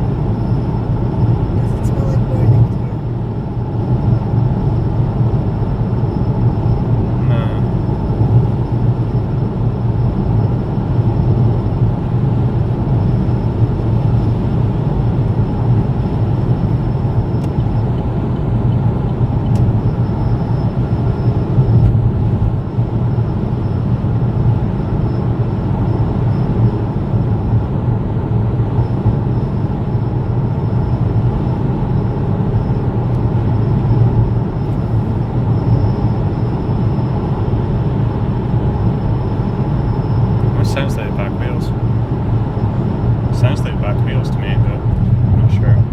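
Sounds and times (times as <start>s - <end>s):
car road noise with low drone: 0.0s - 45.9s
faint high whine: 0.3s - 11.9s, 28.8s - 45.9s.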